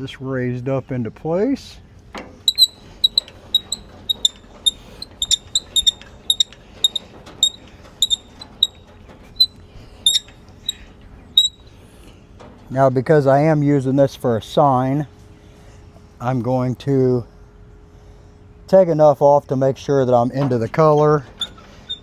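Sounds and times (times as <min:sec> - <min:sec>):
squeaky mechanism clicks: 0:02.5 - 0:11.8, 0:20.8 - 0:22.0.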